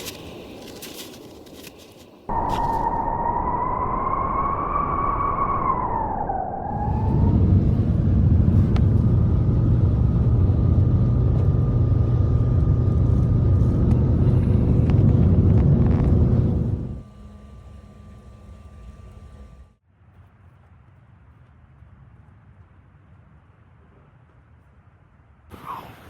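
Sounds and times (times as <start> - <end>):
engine running with low rumble: 0.0 - 19.8.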